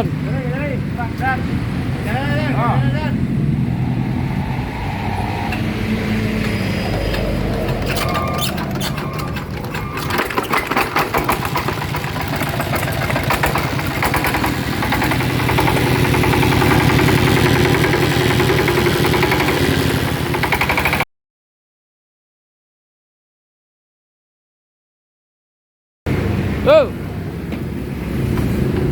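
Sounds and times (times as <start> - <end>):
diesel engine starting up: 1.4 - 21.0.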